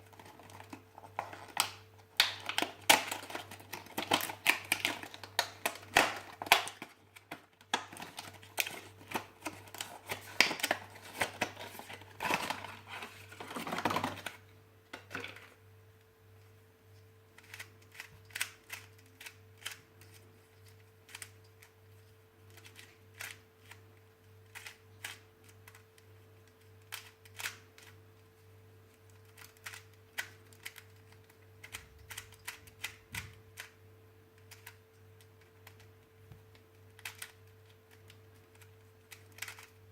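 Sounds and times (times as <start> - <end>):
clicks taps and rustles: 0.0 - 16.1
faint steady hum: 0.0 - 39.9.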